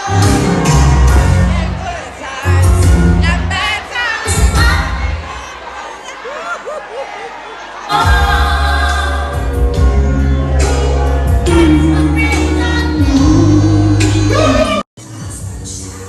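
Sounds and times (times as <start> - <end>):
heavy bass line: 8.0 - 16.0
person singing: 11.3 - 16.0.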